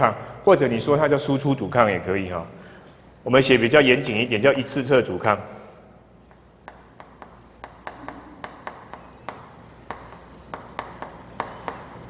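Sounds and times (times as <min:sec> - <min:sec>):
pen scratching and tapping on paper: 0:06.3 - 0:12.0.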